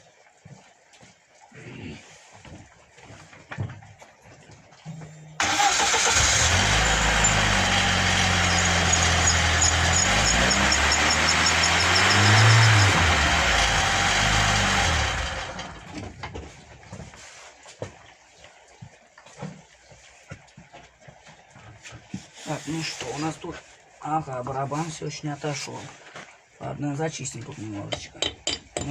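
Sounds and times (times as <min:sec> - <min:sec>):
car engine revving: 0:05.4 - 0:15.9
brake drum spinning: 0:05.4 - 0:16.1.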